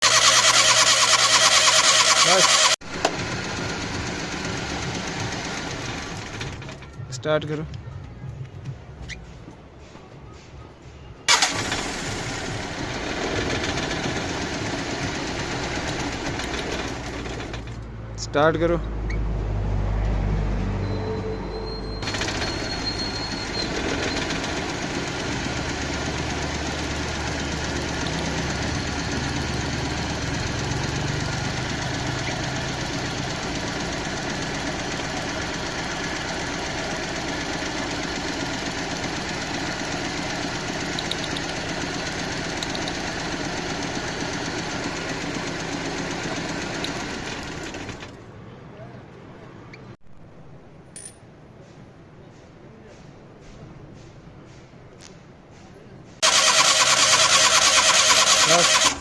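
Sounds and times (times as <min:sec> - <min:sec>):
car engine running: 0:00.0 - 0:07.0, 0:11.3 - 0:17.9, 0:22.0 - 0:22.6, 0:23.5 - 0:48.2, 0:56.2 - 0:59.0.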